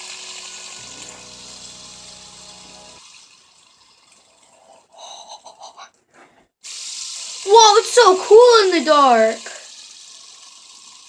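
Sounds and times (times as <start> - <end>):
fidget spinner whirring: 6.7 - 11.0.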